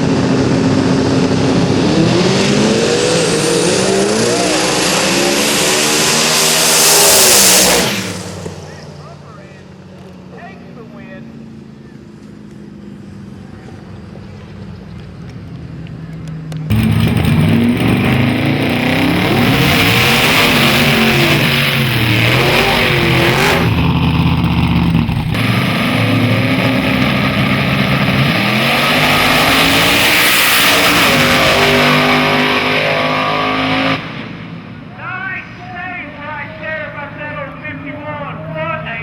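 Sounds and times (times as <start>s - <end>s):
truck engine revving: 0.0s - 10.7s, 16.5s - 34.8s.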